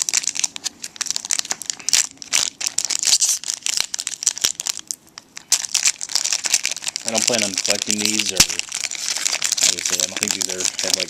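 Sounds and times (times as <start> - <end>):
card wrapper crinkling and tearing: 0.0 - 11.0.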